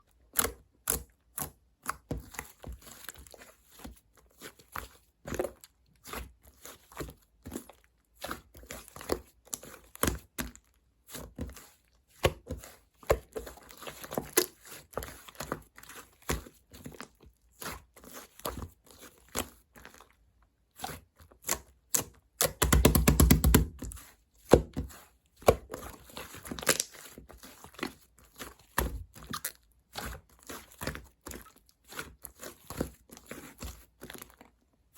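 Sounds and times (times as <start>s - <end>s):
slime squeezed with sticky pops: 26.5s - 26.9s.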